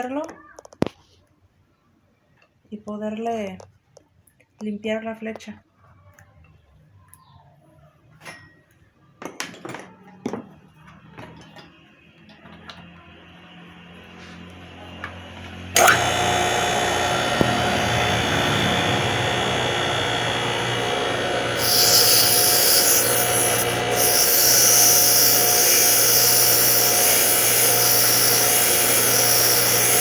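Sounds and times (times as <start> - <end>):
electric pump motor humming: 15.8 - 30.0
harsh abrasive rasp: 21.4 - 30.0.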